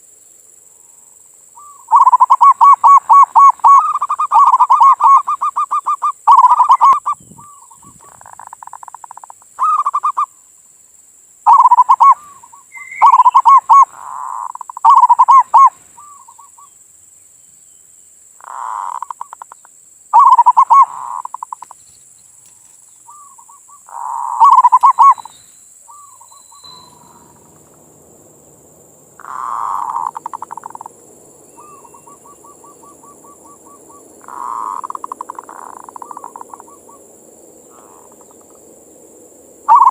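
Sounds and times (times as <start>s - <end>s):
dove cooing: 1.6s - 10.3s, 11.5s - 16.7s, 18.4s - 19.6s, 20.2s - 21.8s, 22.4s - 39.9s
faint low hum: 12.1s - 39.9s.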